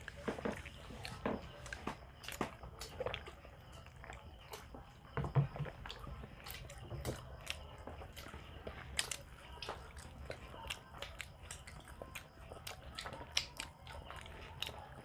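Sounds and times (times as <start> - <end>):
people biting and chewing: 0.0 - 15.0.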